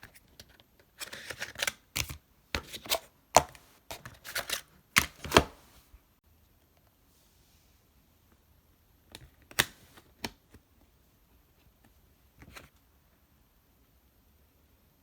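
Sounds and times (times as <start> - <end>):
clicks and taps handling packaging: 0.0 - 5.6.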